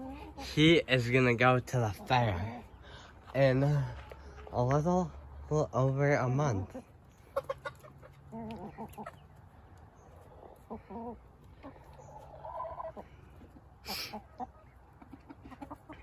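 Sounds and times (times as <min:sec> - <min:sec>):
chickens clucking: 0:00.0 - 0:16.0.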